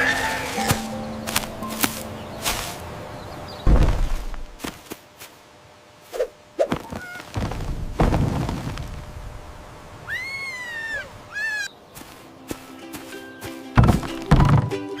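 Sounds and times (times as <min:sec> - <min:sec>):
animal call rising and falling: 0:00.0 - 0:00.8, 0:10.0 - 0:11.7
heavy thump and low rumble: 0:03.6 - 0:04.6
short knocks and thuds: 0:03.6 - 0:05.0, 0:13.8 - 0:14.8.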